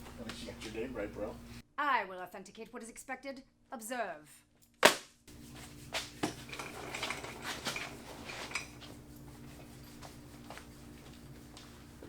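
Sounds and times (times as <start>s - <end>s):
steady low hum: 0.0s - 1.6s.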